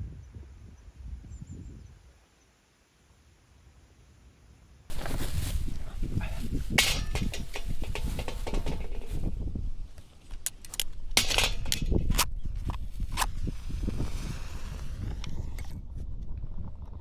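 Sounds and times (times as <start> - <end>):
wind buffeting microphone: 4.9 - 17.0
clicks knocks and clinks: 6.2 - 9.3, 10.3 - 12.3.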